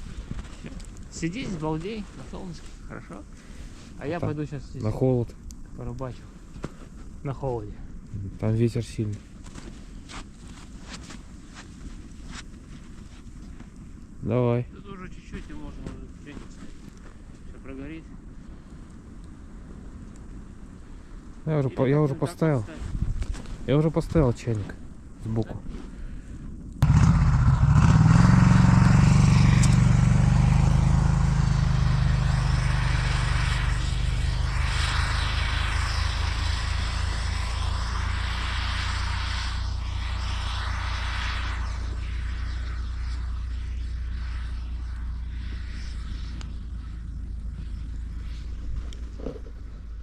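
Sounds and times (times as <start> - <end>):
snowmobile engine revving: 26.8 - 43.4.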